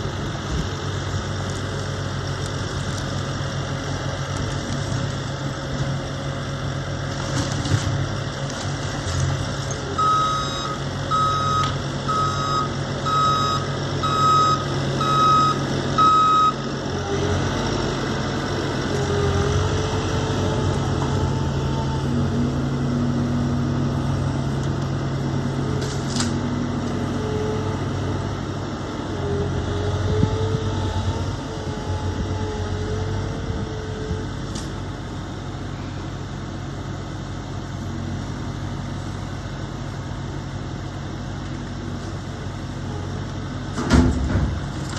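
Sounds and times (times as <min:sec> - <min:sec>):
engine whine: 0:00.0 - 0:44.9
heavy machine engine running: 0:00.0 - 0:44.9
reversing alarm beeping: 0:10.0 - 0:16.6.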